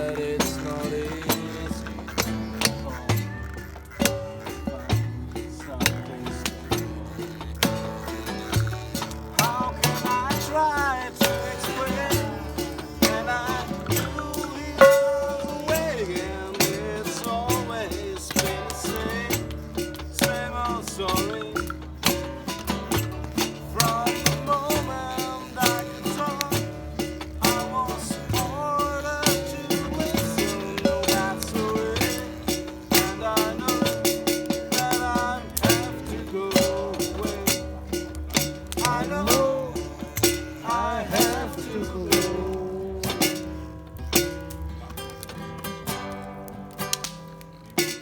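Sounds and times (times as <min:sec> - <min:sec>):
person singing sliding notes: 0:00.0 - 0:03.3, 0:05.4 - 0:43.7
strummed string instrument: 0:00.0 - 0:48.0
wavering melody line: 0:10.6 - 0:16.6.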